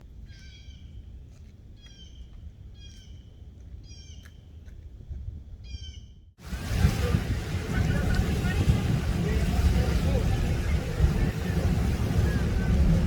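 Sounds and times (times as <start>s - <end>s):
low steady rumble: 6.4s - 13.0s.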